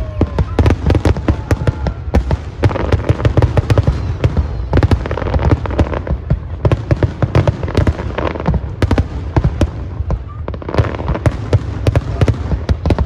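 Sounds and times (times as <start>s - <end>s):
fireworks bangs and crackles: 0.0s - 13.0s.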